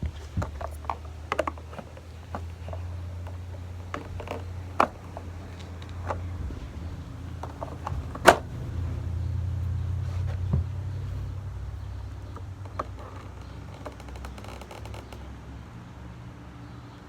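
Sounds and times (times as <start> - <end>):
steady low hum: 0.0 - 14.0
clicks and knocks on casing: 0.1 - 6.6, 7.3 - 8.5.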